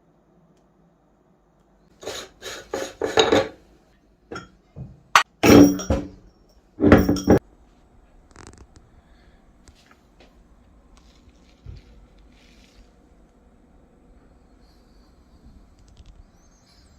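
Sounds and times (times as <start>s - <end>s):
scraping strokes: 2.0s - 3.6s.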